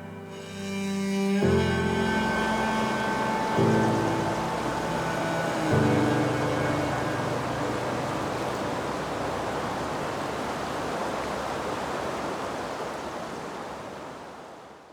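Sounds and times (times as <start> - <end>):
waterfall rushing: 1.4 - 14.0.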